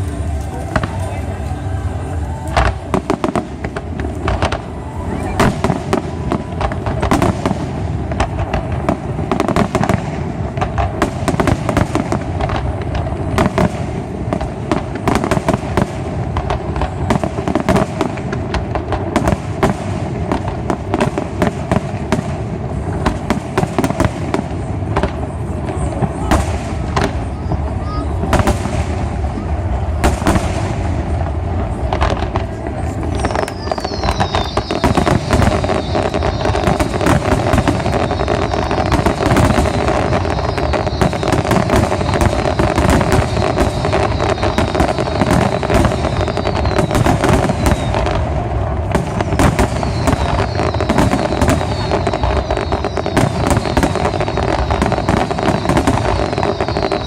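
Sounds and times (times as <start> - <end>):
fireworks crackling and banging: 0.0 - 57.0
high falling whistles: 33.1 - 48.0, 49.6 - 57.0.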